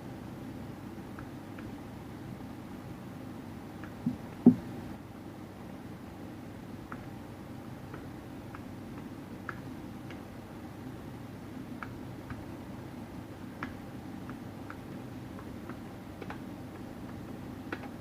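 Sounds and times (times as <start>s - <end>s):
steady low hum: 0.0s - 18.0s
soft keyboard clicks: 7.9s - 10.2s, 13.6s - 18.0s.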